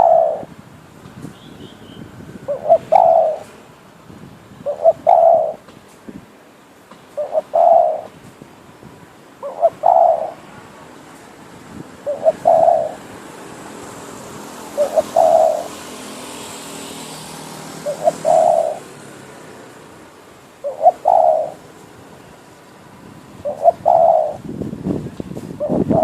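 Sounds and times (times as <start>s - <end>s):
dove cooing: 0.0s - 0.5s, 2.5s - 3.5s, 4.6s - 5.6s, 7.2s - 8.2s, 9.4s - 10.4s, 12.0s - 13.1s, 14.7s - 15.9s, 17.7s - 19.0s, 20.6s - 21.8s, 23.4s - 24.4s, 25.6s - 26.0s.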